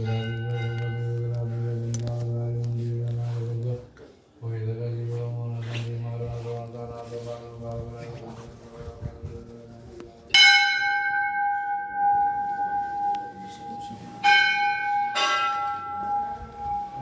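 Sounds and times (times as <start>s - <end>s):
large metal bell ringing: 0.0s - 2.0s, 10.3s - 17.0s.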